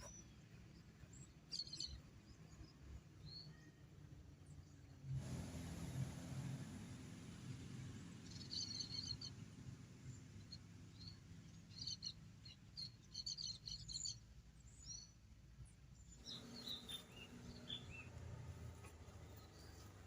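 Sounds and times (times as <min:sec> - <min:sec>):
birds chirping faintly: 0:00.0 - 0:05.0, 0:07.5 - 0:20.0.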